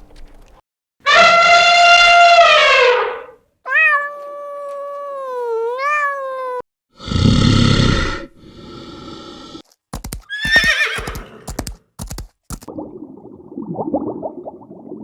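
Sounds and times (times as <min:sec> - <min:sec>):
sharp knocks: 0:10.0 - 0:12.7
horse whinnying: 0:10.3 - 0:11.6.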